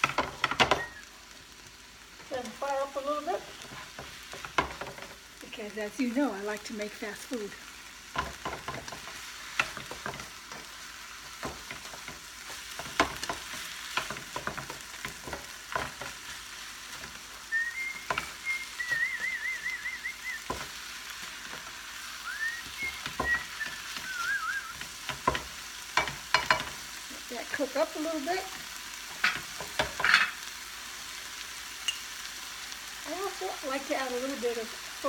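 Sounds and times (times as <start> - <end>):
meat and onions sizzling in pan: 0.0 - 35.0
spoon scraping pan: 2.2 - 5.2, 24.7 - 30.5
short warbling whistle: 17.5 - 20.5, 22.2 - 24.8.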